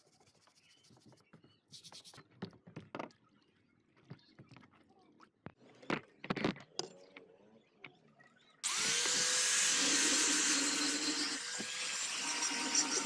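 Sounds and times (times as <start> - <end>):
electric power tool motor: 8.6 - 13.0.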